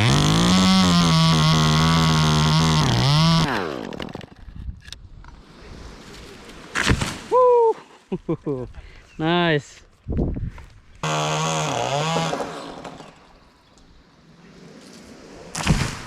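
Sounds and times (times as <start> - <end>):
chainsaw revving: 0.0 - 4.3, 11.0 - 13.3.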